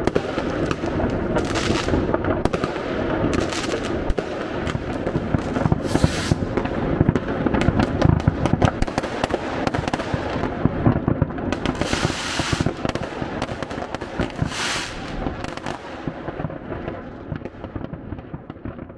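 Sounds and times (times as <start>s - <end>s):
fireworks bangs and crackles: 0.0s - 18.9s
hissing crackling firework bursts: 2.7s - 7.1s, 11.6s - 16.4s.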